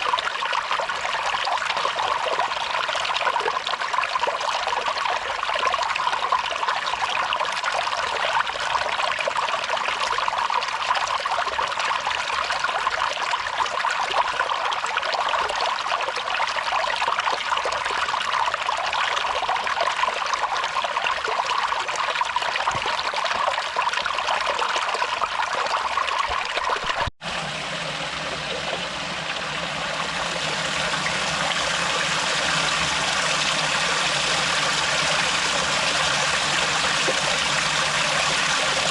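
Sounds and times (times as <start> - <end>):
water trickling into a pool: 0.0 - 38.9
deep rush of water: 26.9 - 38.9.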